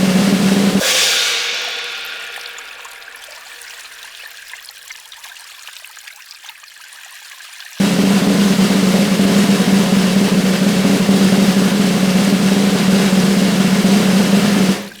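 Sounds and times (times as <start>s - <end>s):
snare drum roll: 0.0s - 3.9s, 7.8s - 15.0s.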